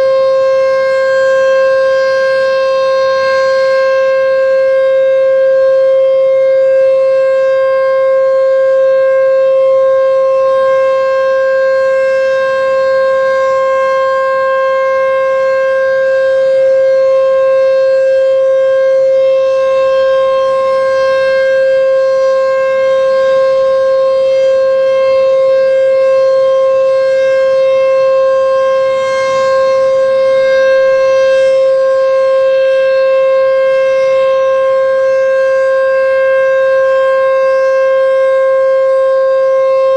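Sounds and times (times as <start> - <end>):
steady warning siren tone: 0.0 - 39.9.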